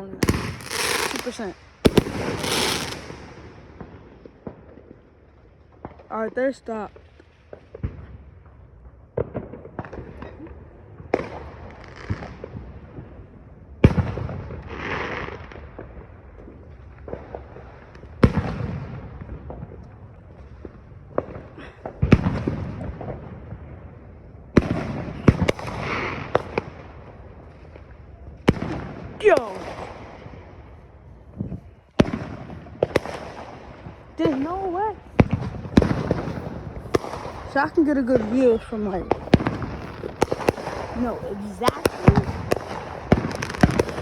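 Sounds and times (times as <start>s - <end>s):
fireworks bangs: 0.0s - 5.0s, 5.7s - 13.2s, 13.8s - 44.0s
fireworks crackling: 0.0s - 8.6s, 13.8s - 44.0s.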